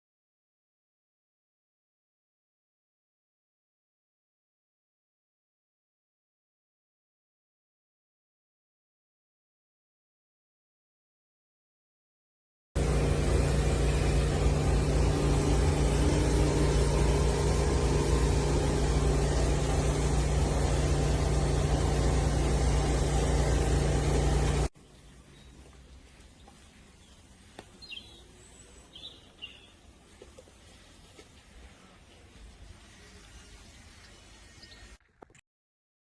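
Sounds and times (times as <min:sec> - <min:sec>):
loud machine droning: 0:12.8 - 0:35.0
high bird-like chirps: 0:24.8 - 0:29.9.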